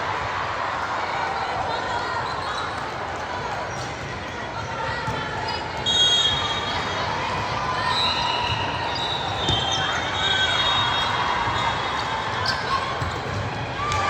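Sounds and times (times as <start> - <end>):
sneakers squeaking on court: 8.0 - 11.8, 12.4 - 13.5.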